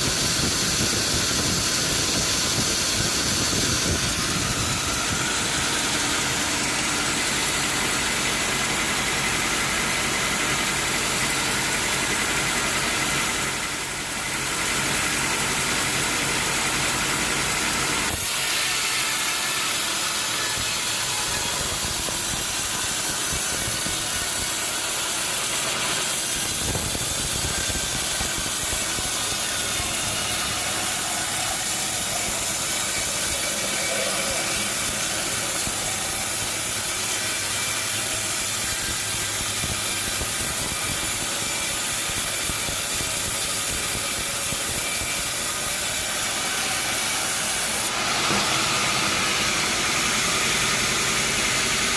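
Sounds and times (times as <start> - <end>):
loud machinery hiss: 0.0 - 51.9.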